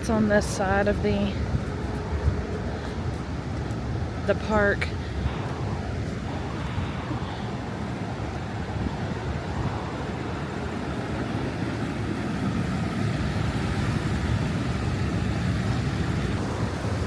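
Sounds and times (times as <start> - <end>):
waterfall rushing: 13.2 - 17.0.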